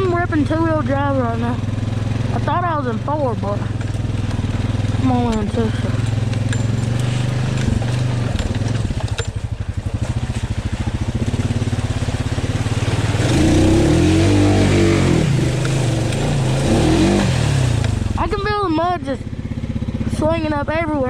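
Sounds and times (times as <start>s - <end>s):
atv engine revving: 0.0s - 21.0s
churning through mud water: 0.0s - 21.0s.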